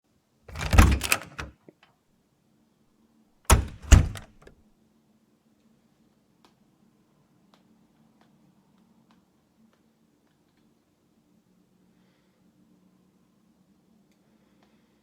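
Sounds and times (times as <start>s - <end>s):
faint room hum: 0.1s - 15.0s
heavy knocks and thuds: 3.5s - 4.5s.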